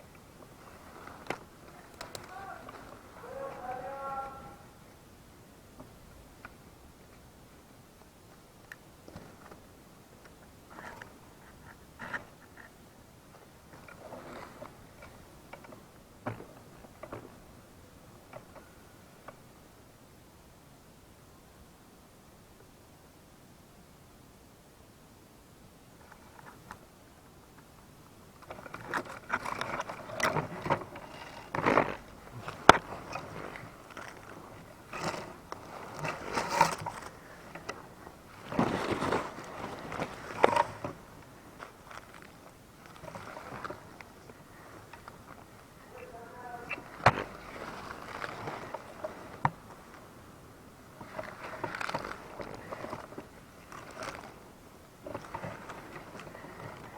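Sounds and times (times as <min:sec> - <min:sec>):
rustling and crunching: 0:00.0 - 0:04.8, 0:28.3 - 0:56.9.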